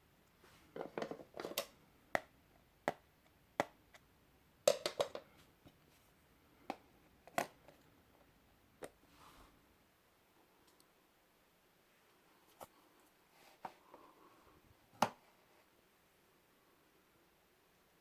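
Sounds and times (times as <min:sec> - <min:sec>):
soft rustle: 0:00.3 - 0:00.8, 0:05.3 - 0:06.2, 0:09.0 - 0:09.7, 0:11.9 - 0:14.5.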